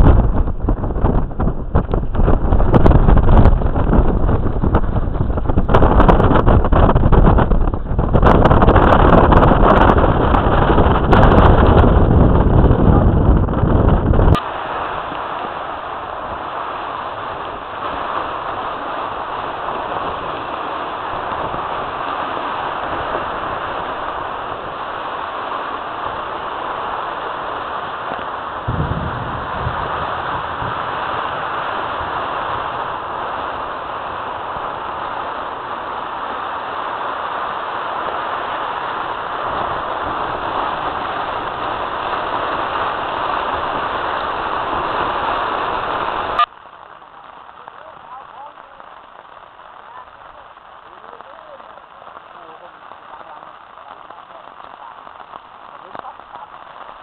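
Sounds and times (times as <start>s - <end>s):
low rumble: 0.0s - 14.4s, 28.6s - 33.8s
floodwater rushing: 0.0s - 57.0s.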